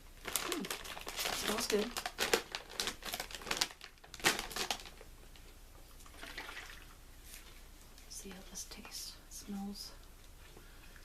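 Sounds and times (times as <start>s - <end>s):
chip bag crinkling: 0.2s - 5.5s.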